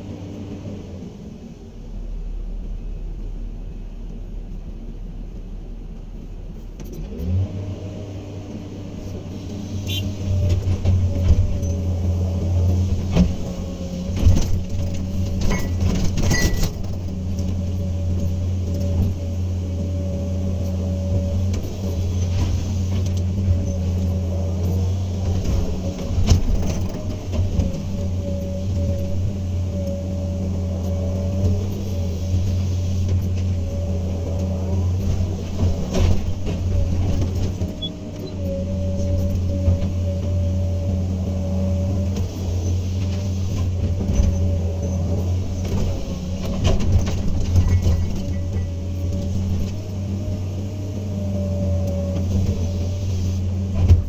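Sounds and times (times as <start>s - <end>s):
excavator diesel engine running: 0.0s - 54.0s
brief high squeal: 9.8s - 10.2s, 15.5s - 16.7s.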